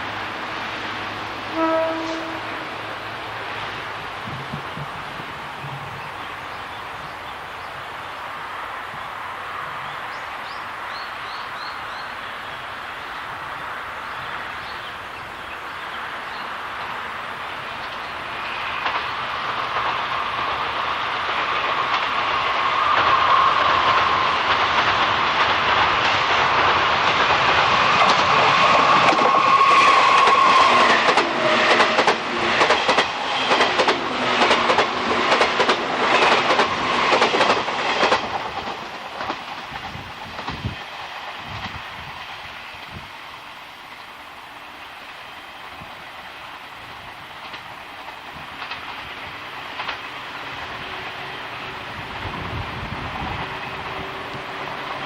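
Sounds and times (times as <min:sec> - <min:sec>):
train rumble with whine: 0:00.0 - 0:55.0
wheels clacking over rail joints: 0:03.4 - 0:06.8, 0:16.3 - 0:43.0, 0:46.0 - 0:51.4.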